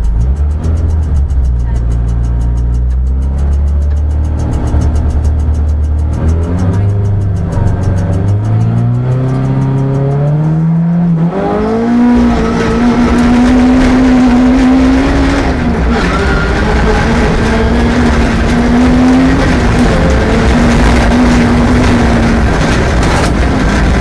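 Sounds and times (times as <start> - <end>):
car engine accelerating hard: 0.0 - 24.0.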